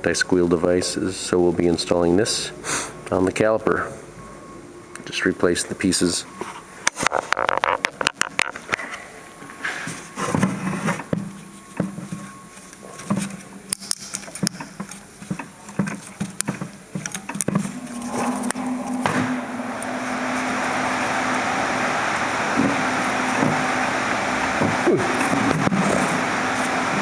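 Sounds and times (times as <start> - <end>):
vehicle engine hum: 17.5 - 27.0.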